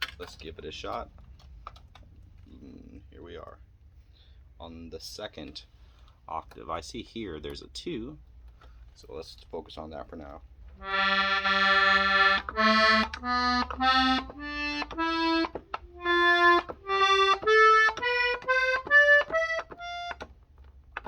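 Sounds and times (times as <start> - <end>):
accordion single notes: 10.8 - 20.3
accordion key clicks: 10.8 - 21.0.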